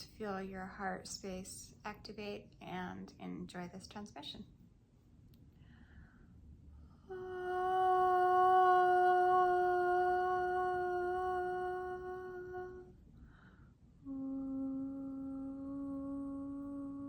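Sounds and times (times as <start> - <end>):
woman humming long notes: 7.1 - 13.0, 14.0 - 17.0.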